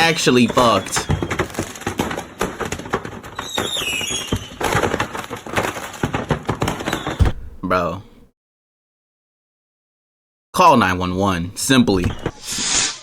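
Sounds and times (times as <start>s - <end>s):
fireworks popping and crackling: 0.3s - 7.2s.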